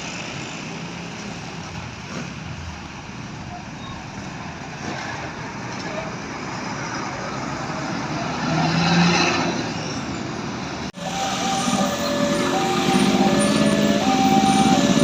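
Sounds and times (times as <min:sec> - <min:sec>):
bus passing by: 0:04.0 - 0:15.0.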